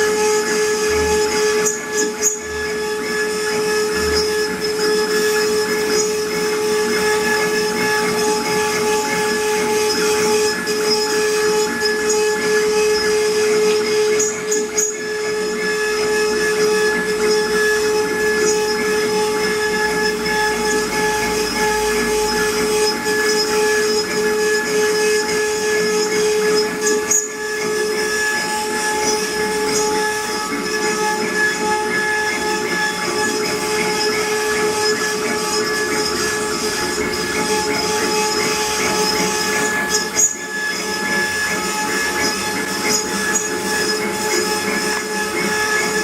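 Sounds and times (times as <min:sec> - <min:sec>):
bit cutting wood: 0:00.0 - 0:46.0
router spindle whine: 0:00.0 - 0:46.0.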